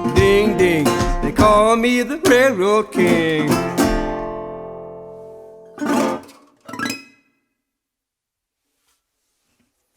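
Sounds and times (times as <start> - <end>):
resonator guitar strummed chords: 0.0 - 6.3.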